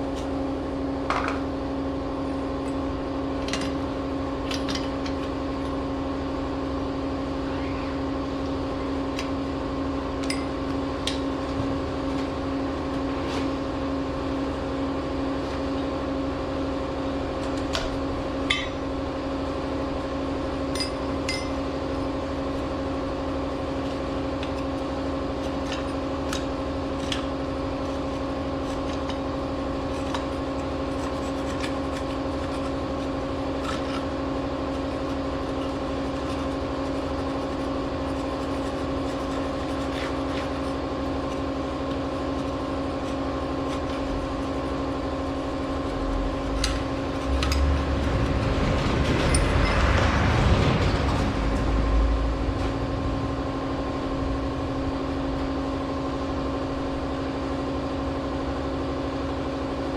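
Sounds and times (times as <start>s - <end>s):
loud rushing swell: 47.3s - 54.5s.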